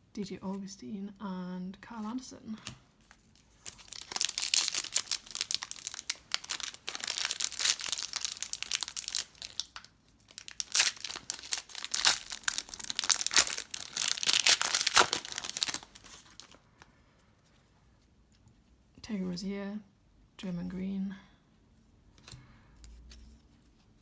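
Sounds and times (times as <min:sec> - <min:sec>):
foil wrapper crinkling and tearing: 0:03.4 - 0:16.6.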